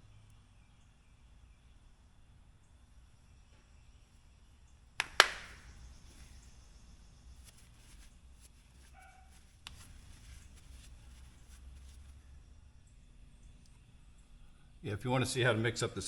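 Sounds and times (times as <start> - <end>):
sharp knocks on hard surface: 5.0 - 5.6.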